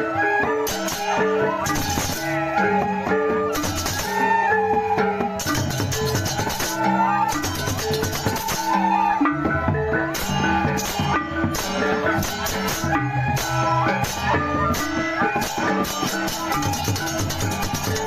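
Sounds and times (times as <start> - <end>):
drumming: 0.0 - 18.0
clashing cymbals: 10.2 - 18.0
ringing bronze gongs: 10.2 - 18.0.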